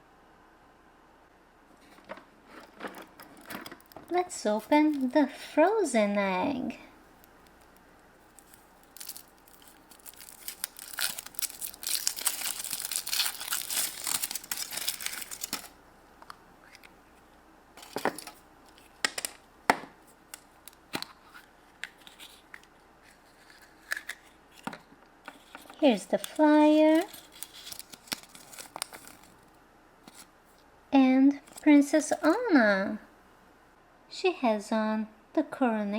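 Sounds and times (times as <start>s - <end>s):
foil wrapper crinkling: 1.9s - 5.7s, 7.2s - 15.8s, 17.8s - 19.4s, 20.0s - 24.6s, 25.3s - 30.3s, 31.4s - 32.4s.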